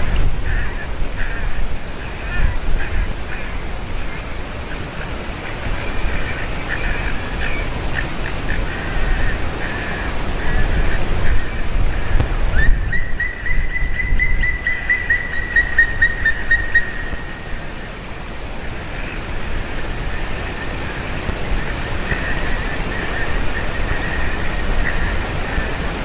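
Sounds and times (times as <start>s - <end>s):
woodpecker calling ringing notes: 0.0s - 19.3s
steady rushing noise: 0.0s - 26.0s.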